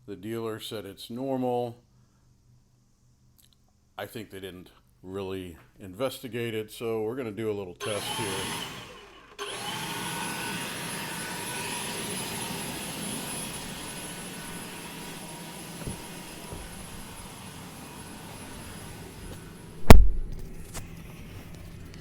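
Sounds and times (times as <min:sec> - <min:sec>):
blower air rushing: 0:07.8 - 0:21.4.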